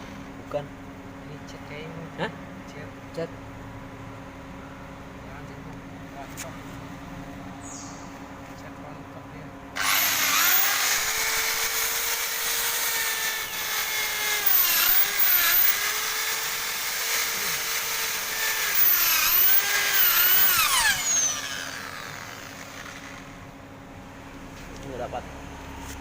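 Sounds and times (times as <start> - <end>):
electric drill with wire brush: 9.8 - 23.4.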